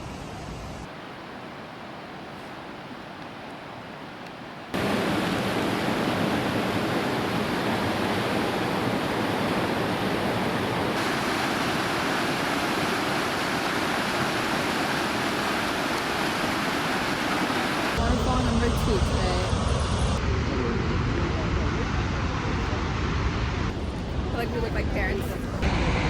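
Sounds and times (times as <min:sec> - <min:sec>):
waterfall rushing: 0:04.7 - 0:19.3.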